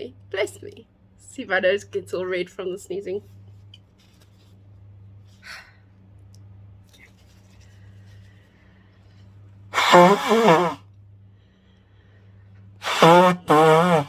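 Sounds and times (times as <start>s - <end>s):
woman sneezing: 9.8s - 10.8s, 12.8s - 14.0s.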